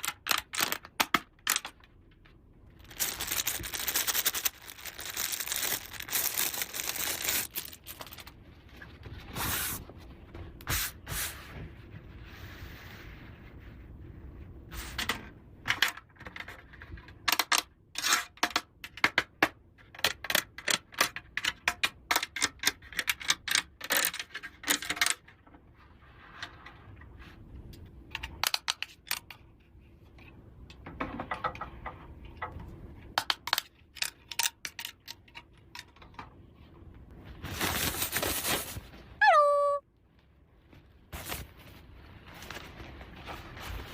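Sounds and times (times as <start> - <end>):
plastic toy pieces clicking: 0.0 - 1.8, 17.2 - 25.2, 33.2 - 36.2.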